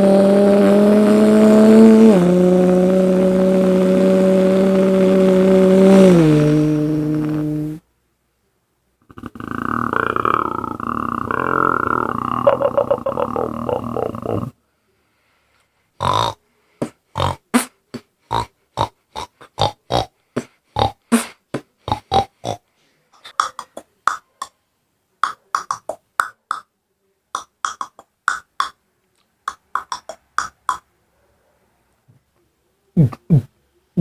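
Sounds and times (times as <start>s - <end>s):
man making beatbox mouth sounds: 9.0s - 14.6s, 16.0s - 22.6s, 23.2s - 24.6s, 25.2s - 26.7s, 27.3s - 28.8s, 29.4s - 30.9s, 33.0s - 34.0s.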